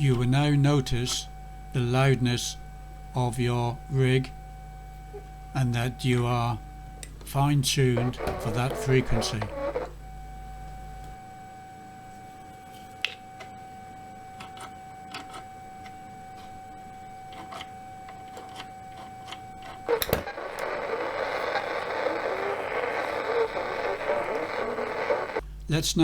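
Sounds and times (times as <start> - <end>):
radio receiver hiss: 0.0 - 26.0.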